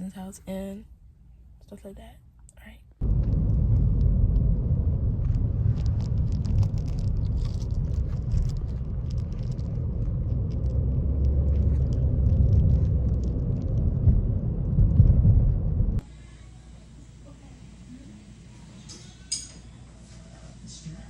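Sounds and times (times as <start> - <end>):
road noise inside moving car: 3.0 - 16.0.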